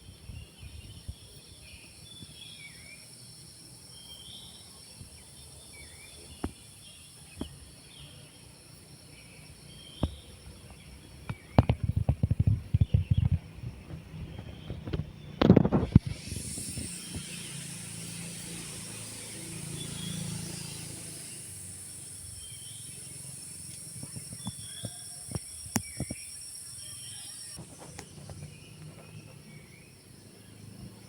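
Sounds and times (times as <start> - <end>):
high-pitched insect drone: 14.9 - 31.0
sharp clicks: 23.6 - 26.3.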